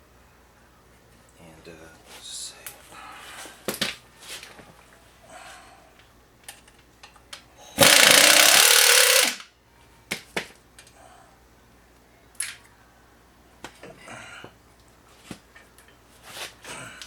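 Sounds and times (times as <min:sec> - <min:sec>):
air ratchet burst: 0:07.8 - 0:09.4.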